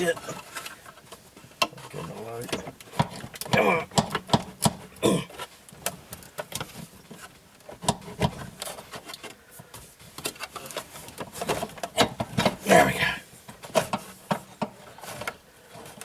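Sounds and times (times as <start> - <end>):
clicks and knocks of parts handled: 0.2 - 9.4, 10.1 - 12.6.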